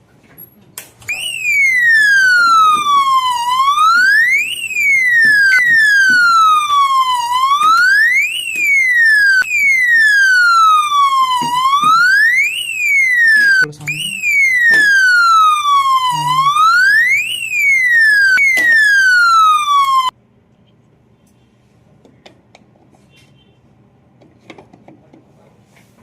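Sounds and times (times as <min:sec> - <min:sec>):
fire alarm hooter wailing: 0:01.1 - 0:20.1.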